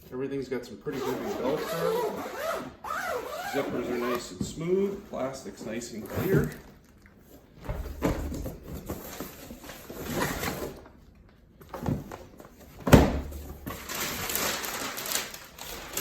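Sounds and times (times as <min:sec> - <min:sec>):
packaging and fabric rustling: 0:13.5 - 0:16.0.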